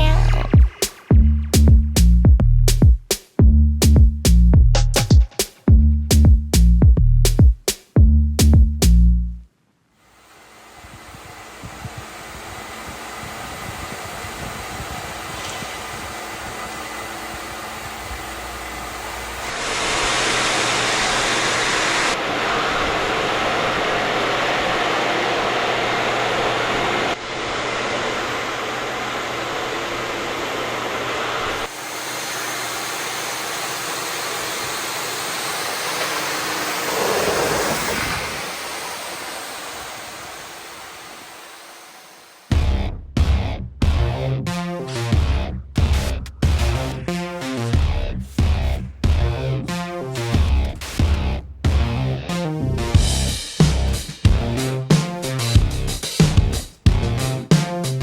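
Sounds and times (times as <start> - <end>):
loud machine noise: 10.1 - 42.6.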